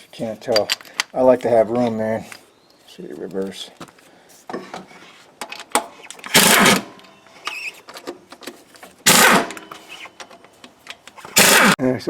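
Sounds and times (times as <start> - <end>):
power driver whirring: 6.3 - 6.9, 9.1 - 10.1, 11.1 - 11.8.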